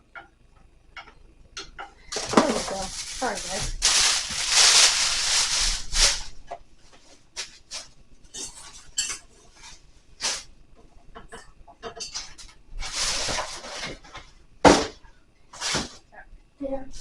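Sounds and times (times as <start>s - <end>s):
cardboard and plastic rustling: 2.0s - 8.9s, 12.2s - 16.0s.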